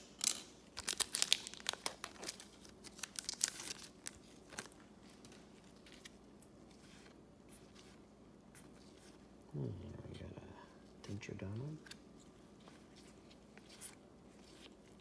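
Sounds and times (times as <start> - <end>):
wrapper crinkling and tearing: 0.0 - 6.2
cards being handled: 0.0 - 9.2, 11.5 - 15.0.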